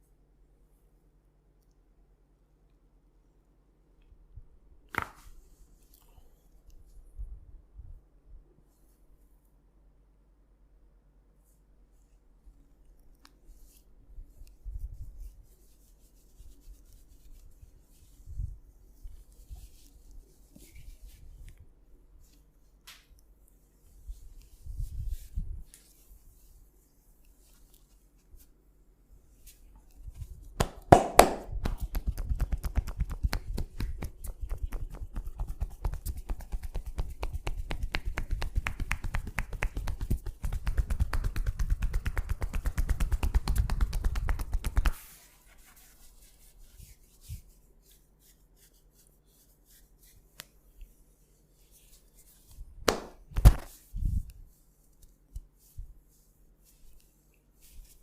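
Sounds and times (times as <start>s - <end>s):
loud sharp slaps: 30.6s - 33.9s, 52.8s - 53.8s
hands tapping rapidly: 30.6s - 44.9s, 52.9s - 53.6s.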